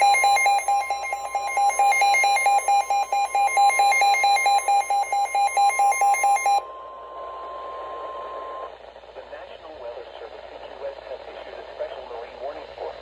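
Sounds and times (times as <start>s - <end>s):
rapid electronic beeping alarm: 0.0s - 8.7s
steady attention tone: 0.0s - 8.7s.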